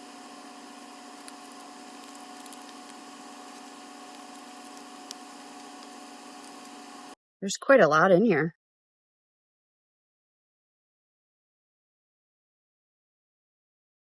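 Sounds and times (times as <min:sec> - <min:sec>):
hiss and electrical hum: 0:00.0 - 0:07.2.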